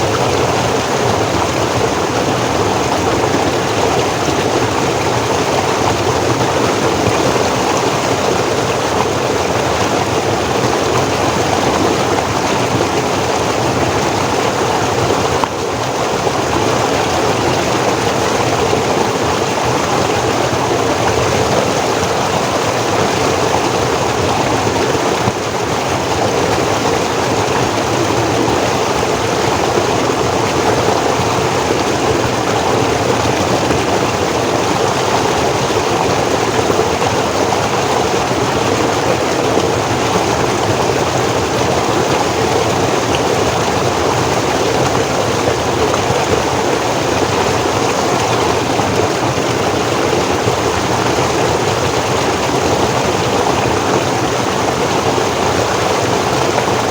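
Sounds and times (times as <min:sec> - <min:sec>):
stream flowing over rocks: 0:00.0 - 0:56.9.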